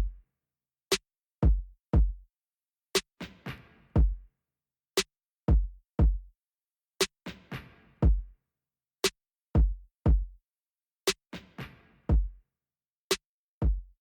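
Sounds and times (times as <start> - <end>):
electronic drum-machine beat: 5.5 - 6.2, 9.6 - 10.3.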